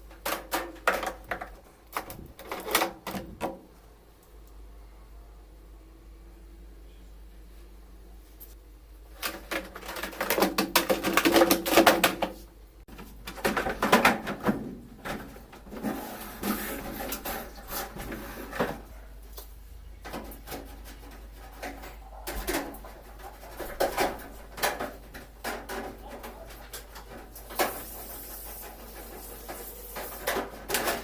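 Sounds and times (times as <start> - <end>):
washing machine parts clattering: 0.0 - 3.6, 9.1 - 12.3, 12.9 - 19.0, 20.0 - 31.0.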